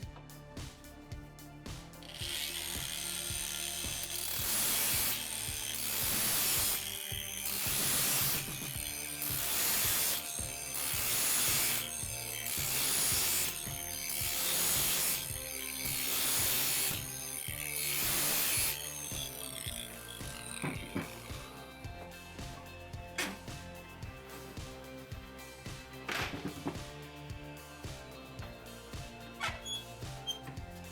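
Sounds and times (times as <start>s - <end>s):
angle grinder rasping on saw teeth: 1.9s - 30.9s.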